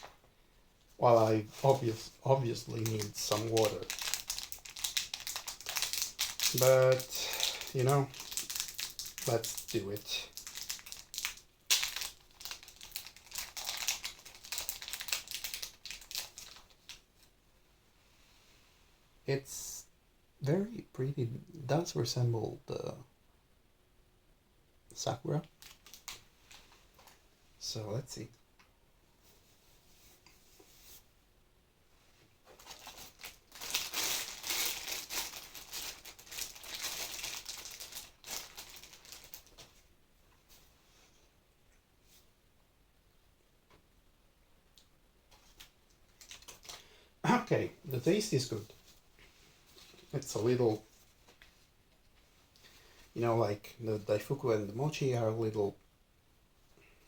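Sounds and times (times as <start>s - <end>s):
plastic wrapper crinkling: 0.0s - 0.2s, 1.1s - 17.3s, 25.4s - 27.2s, 32.4s - 39.9s, 45.3s - 51.6s.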